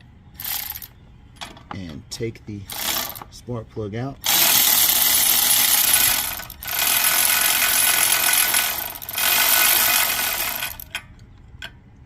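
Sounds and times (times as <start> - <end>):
ratchet wrench clicking: 4.2 - 11.0.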